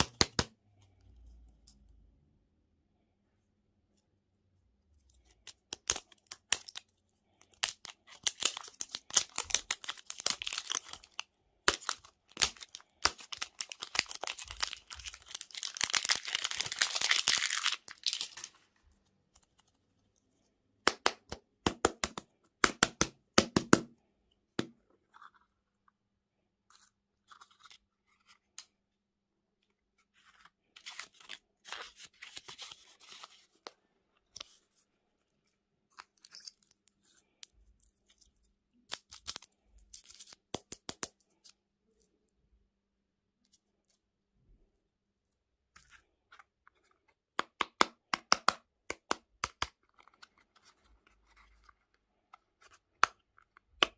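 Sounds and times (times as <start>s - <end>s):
plastic wrapper crinkling: 7.4s - 18.7s.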